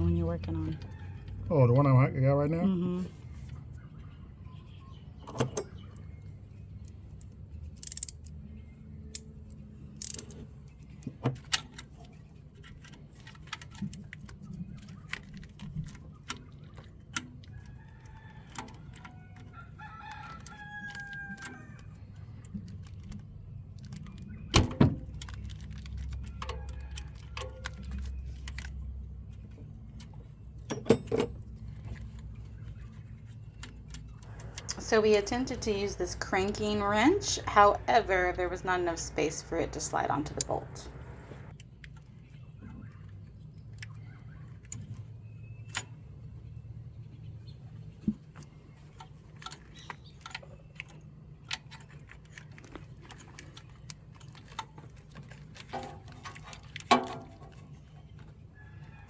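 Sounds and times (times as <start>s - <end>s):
rooster crowing: 17.7s - 21.9s
steady low hum: 31.2s - 41.5s.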